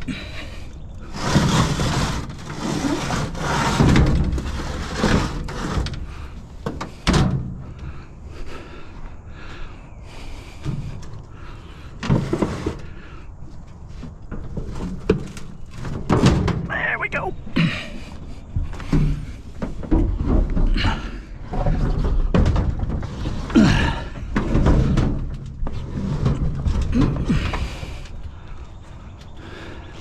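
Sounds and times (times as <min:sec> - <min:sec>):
rough scraping and rattling: 0:00.5 - 0:07.0, 0:18.8 - 0:28.1.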